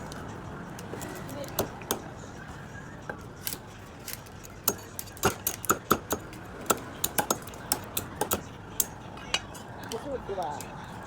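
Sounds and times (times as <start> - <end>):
knife chopping crab shell: 4.6 - 8.5.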